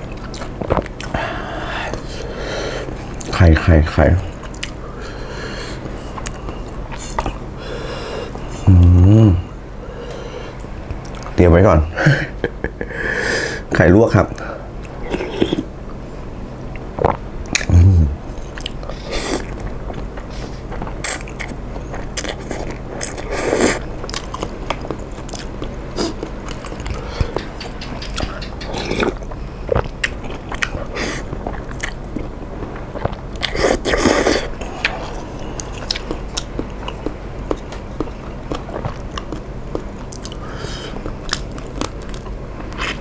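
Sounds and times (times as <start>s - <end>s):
person chewing noodles: 0.0s - 3.4s, 4.2s - 11.4s, 14.8s - 15.7s, 16.7s - 43.0s
moist mouth smacks: 26.0s - 30.8s.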